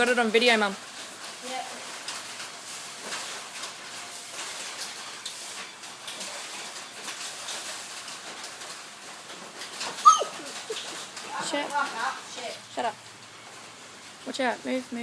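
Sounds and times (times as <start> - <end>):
high-pitched squeak: 10.0 - 10.5.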